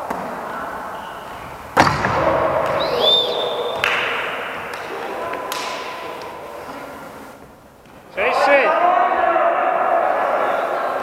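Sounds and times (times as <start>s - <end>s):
murmur of voices: 8.1s - 11.0s.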